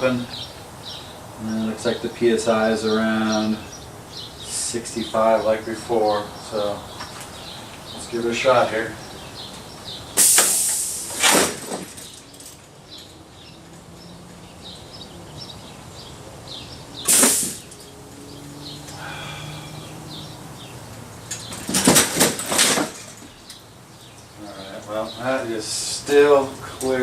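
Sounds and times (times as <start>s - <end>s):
compressed air hissing: 10.0s - 12.0s, 17.0s - 17.8s, 18.9s - 20.1s.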